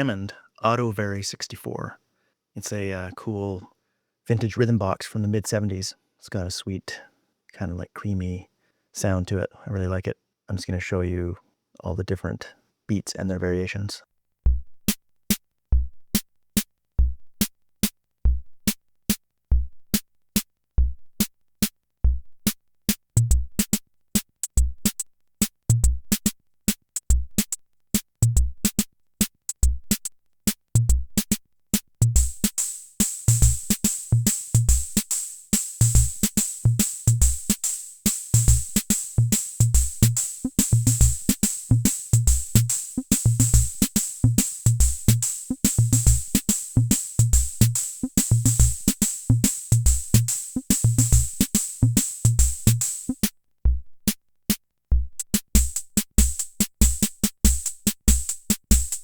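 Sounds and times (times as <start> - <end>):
drum machine bass thumps: 14.5 - 16.2, 17.0 - 18.8, 19.5 - 21.3, 22.0 - 22.6, 23.2 - 59.0
drum machine ticking clicks: 23.2 - 35.2, 35.8 - 59.0
higher drum: 32.1 - 53.8, 55.0 - 59.0.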